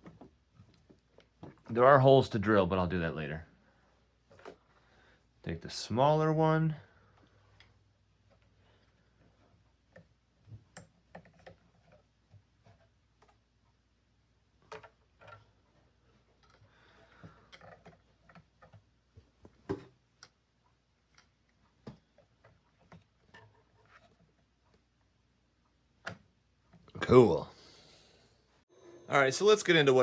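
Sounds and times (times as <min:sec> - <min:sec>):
faint clicks and taps of small parts: 0:07.1 - 0:13.8, 0:14.6 - 0:25.0.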